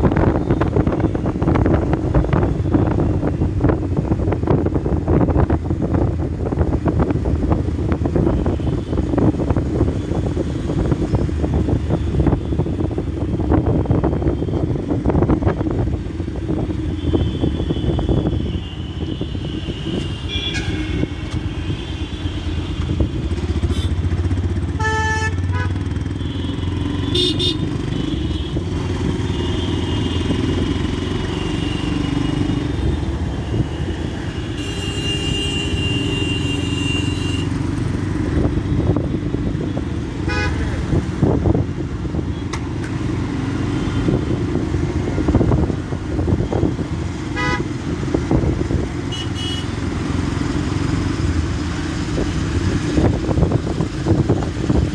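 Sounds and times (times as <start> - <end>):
wind noise on microphone: 0.0 - 25.7, 27.1 - 54.9
vehicle horns honking: 16.8 - 30.6, 31.2 - 37.7, 39.7 - 41.0, 47.3 - 47.8, 49.0 - 49.8
motorcycle engine running: 22.5 - 33.8.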